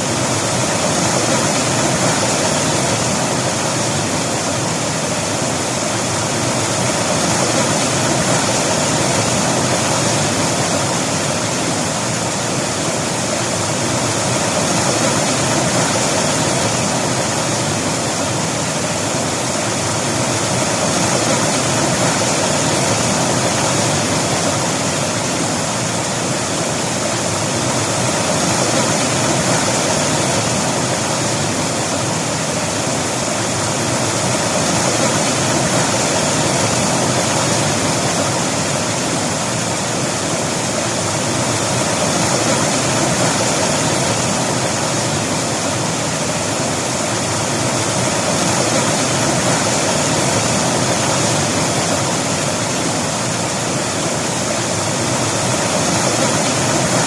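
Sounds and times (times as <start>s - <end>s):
river rushing over rocks: 0.0s - 57.0s.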